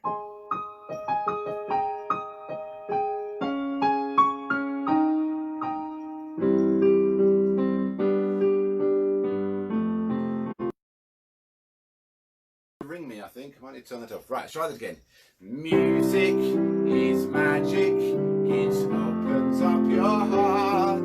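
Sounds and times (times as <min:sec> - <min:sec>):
electric keyboard playing chords: 0:00.0 - 0:10.8, 0:15.7 - 0:21.0.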